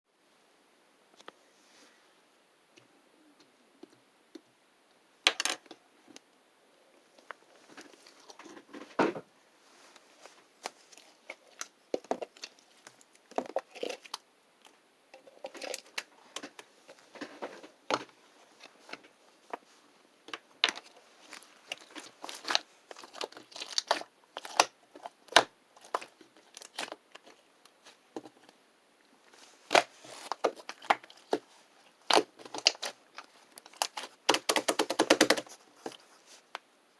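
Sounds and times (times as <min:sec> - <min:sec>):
slime popping and crackling: 0:20.7 - 0:27.3.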